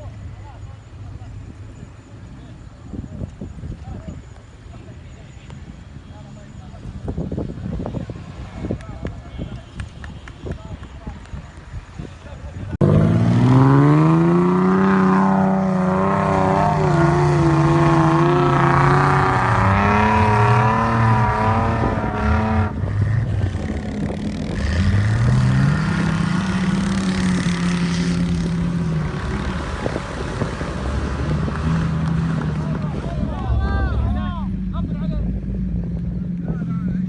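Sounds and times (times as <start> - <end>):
off-road engines revving: 12.5 - 37.0.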